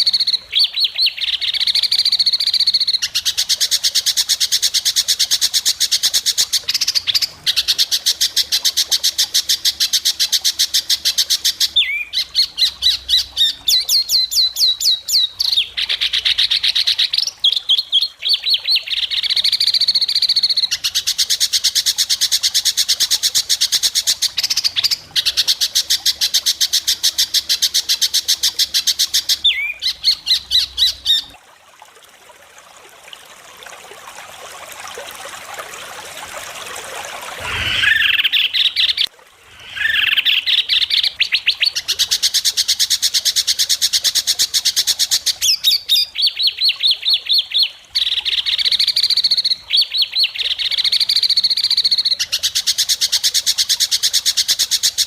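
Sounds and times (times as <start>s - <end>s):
bird singing rapid high notes: 37.4s - 39.1s.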